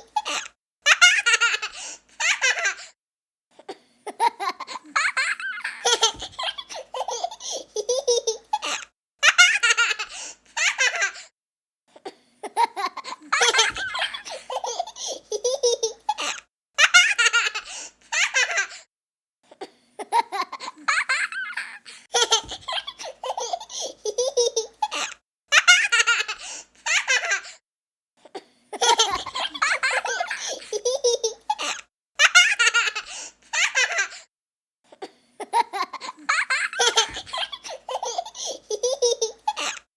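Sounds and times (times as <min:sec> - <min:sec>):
young child laughing: 0:04.1 - 0:11.3, 0:12.4 - 0:18.8, 0:20.0 - 0:27.6, 0:28.8 - 0:34.2, 0:35.4 - 0:39.9.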